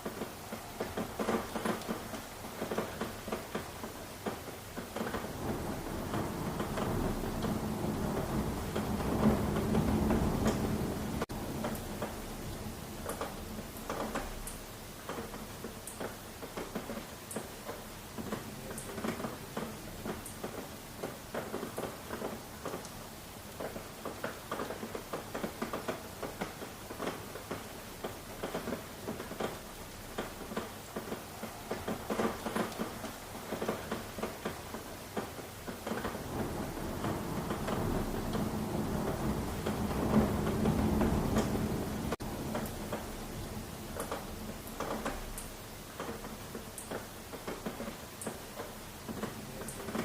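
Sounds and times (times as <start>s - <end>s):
rain drops pattering: 0.0s - 50.0s
low rumble: 36.2s - 42.7s.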